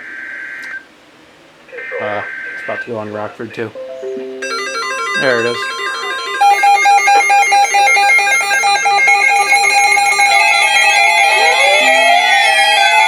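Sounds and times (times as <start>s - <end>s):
other beeping tones: 3.8s - 12.2s
rapidly pulsing alarm beeps: 4.4s - 13.0s
siren-like sweeps: 4.4s - 13.0s.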